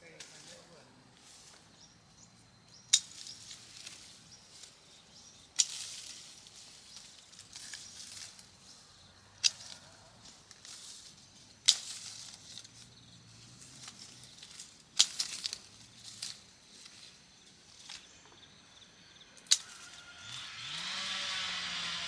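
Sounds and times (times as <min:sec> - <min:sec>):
rustling: 0:02.9 - 0:18.3.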